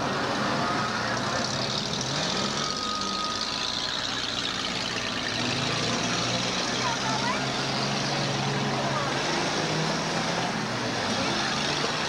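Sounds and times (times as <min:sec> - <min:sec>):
car engines revving: 0:00.0 - 0:12.0.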